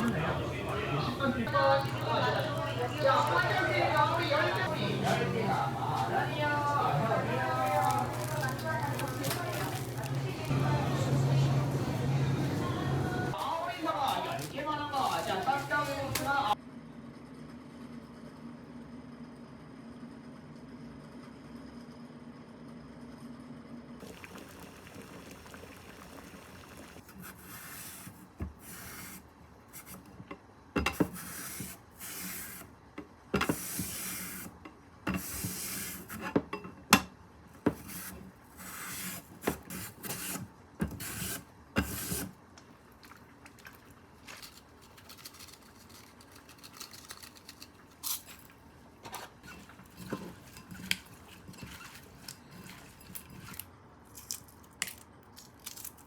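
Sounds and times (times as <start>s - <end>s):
scraping and rubbing: 44.2s - 53.6s.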